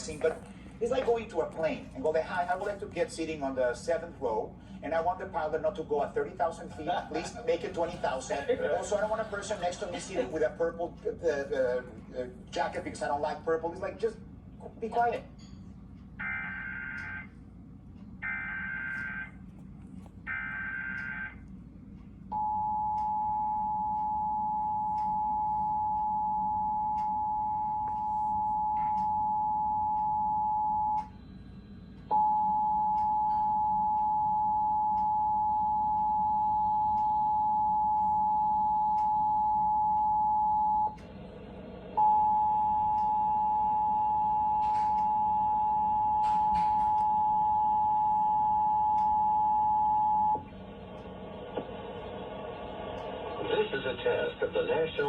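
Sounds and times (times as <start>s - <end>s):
two-tone attention signal: 16.2s - 17.3s, 18.2s - 19.4s, 20.3s - 21.4s
warbling data bursts: 16.2s - 17.3s, 18.2s - 19.3s, 20.3s - 21.4s.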